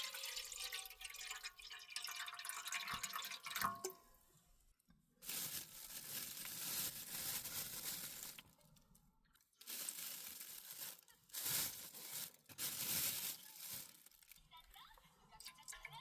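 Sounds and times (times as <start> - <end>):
rustling of handled object: 5.2 - 14.5.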